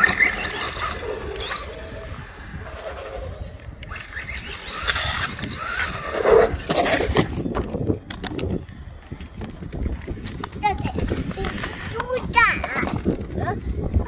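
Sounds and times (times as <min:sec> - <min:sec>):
electric motor whining: 0:00.0 - 0:08.8.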